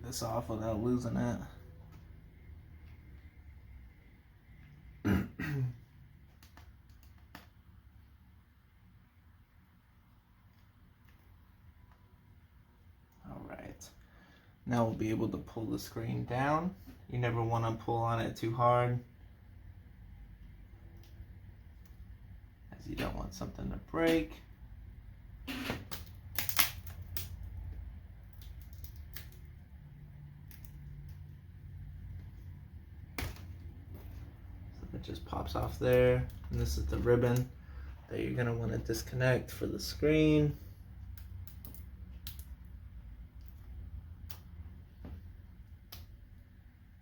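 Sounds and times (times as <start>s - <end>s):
low steady hum: 0.0s - 47.0s
small sharp clicks and taps: 6.2s - 7.6s, 41.0s - 42.7s.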